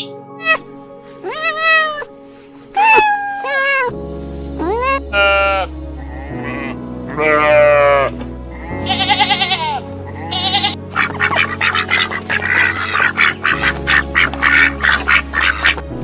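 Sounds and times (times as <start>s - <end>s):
background music: 0.0s - 16.0s
cat meowing: 0.4s - 2.1s, 2.8s - 4.0s, 4.6s - 8.1s.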